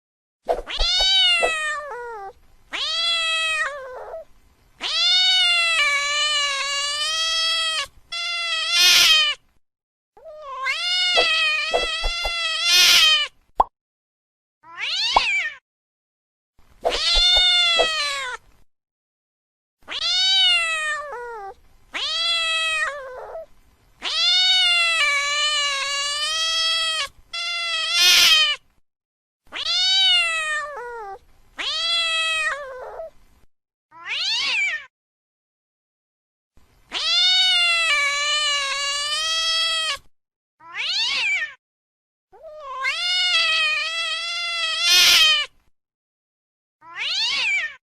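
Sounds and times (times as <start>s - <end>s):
cat yowling: 0.7s - 9.4s, 10.2s - 13.3s, 14.6s - 15.6s, 16.9s - 18.4s, 19.9s - 28.6s, 29.5s - 33.1s, 33.9s - 34.9s, 36.9s - 40.0s, 40.6s - 41.6s, 42.4s - 45.5s, 46.8s - 47.8s.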